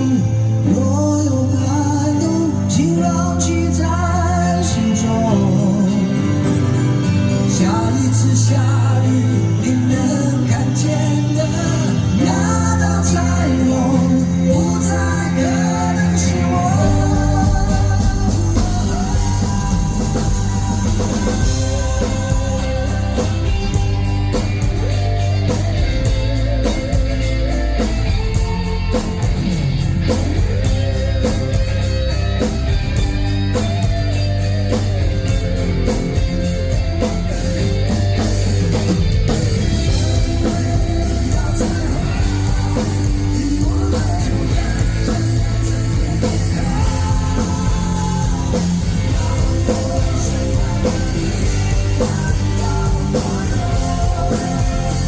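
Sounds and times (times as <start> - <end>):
live rock band playing: 0.0 - 55.0
bending guitar line: 3.7 - 55.0.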